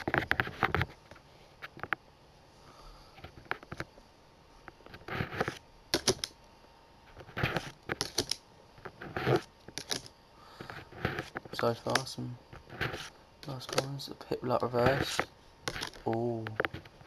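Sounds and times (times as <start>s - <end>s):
cards rustling: 7.2s - 17.0s.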